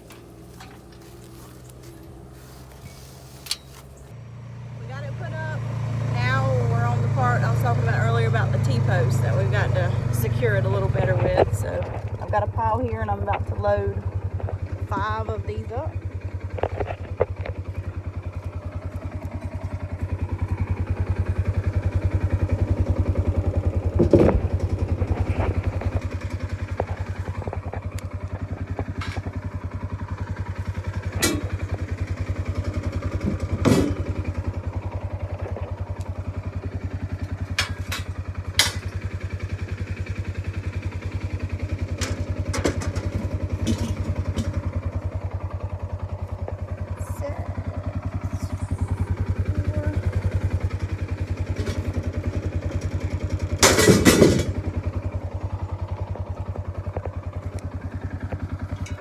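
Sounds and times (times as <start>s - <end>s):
steel posts clanking: 0.0s - 4.1s, 31.0s - 31.8s, 37.2s - 39.1s, 53.6s - 54.6s
engine idling: 0.0s - 59.0s.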